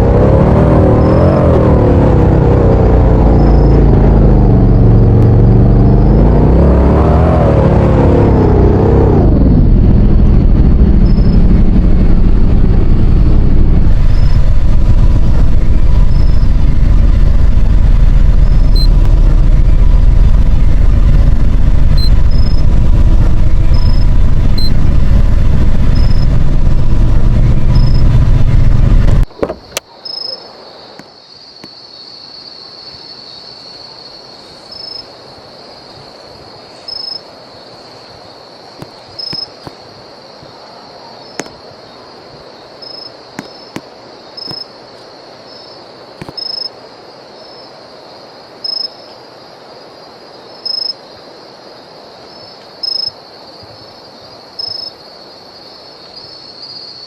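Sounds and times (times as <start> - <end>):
vehicle engine running: 0.0 - 29.8
insect chirping: 0.2 - 1.7, 2.8 - 7.9, 8.8 - 57.0.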